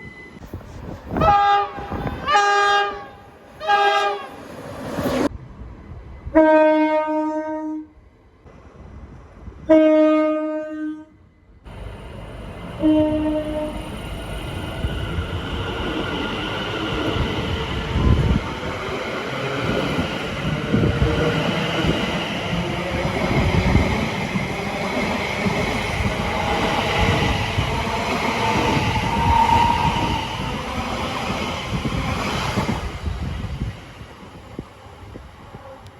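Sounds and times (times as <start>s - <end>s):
train wheels rumbling and rattling: 11.7s - 35.9s
high squeal: 28.6s - 31.0s.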